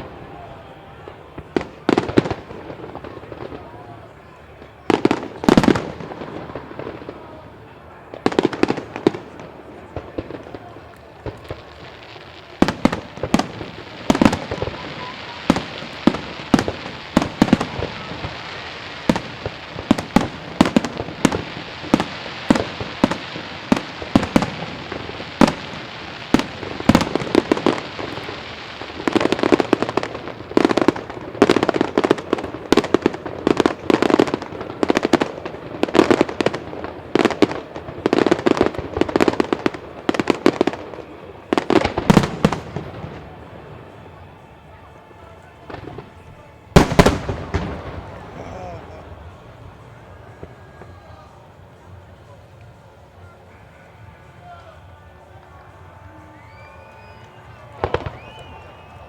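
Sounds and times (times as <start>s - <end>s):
firework shells bursting: 45.7s - 50.8s.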